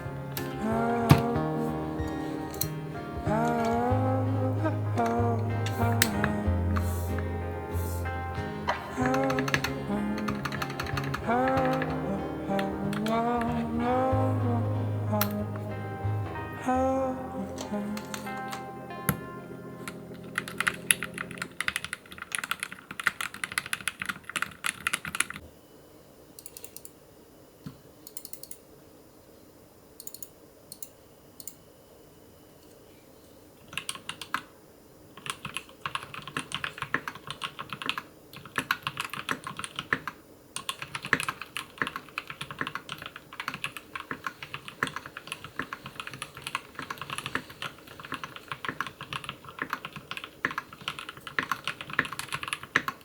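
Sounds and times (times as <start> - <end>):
mechanical keyboard typing: 2.5 - 4.0, 8.7 - 13.6, 19.9 - 25.4, 33.7 - 34.5, 35.2 - 53.0.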